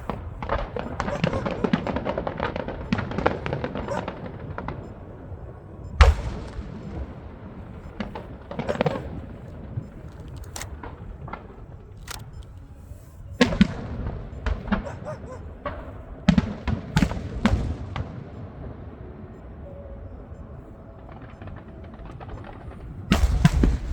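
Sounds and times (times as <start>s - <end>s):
fireworks bangs and crackles: 0.0s - 12.0s, 13.3s - 23.9s.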